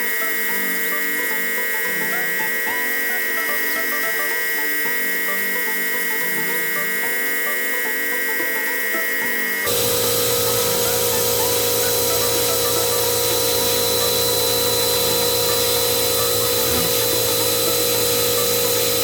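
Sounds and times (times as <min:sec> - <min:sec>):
router spindle whining: 0:00.0 - 0:19.0
machine tones stepping in pitch: 0:00.2 - 0:19.0.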